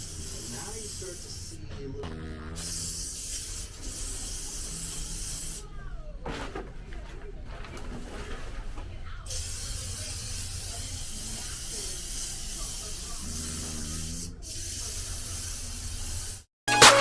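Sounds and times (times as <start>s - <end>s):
aerosol spray hissing: 0.0s - 1.7s, 2.5s - 5.6s, 9.3s - 16.5s.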